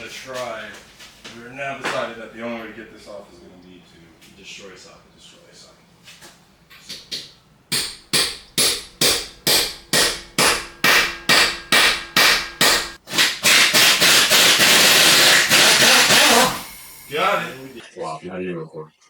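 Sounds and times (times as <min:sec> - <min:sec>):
hammer striking steel socket: 0:06.7 - 0:13.0.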